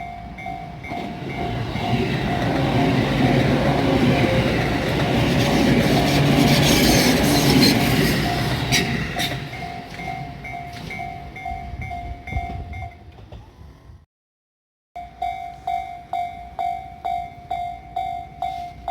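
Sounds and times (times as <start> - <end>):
train passing: 0.0 - 13.9
wheels clacking over rail joints: 0.8 - 11.2
level crossing bell ringing: 8.4 - 13.0.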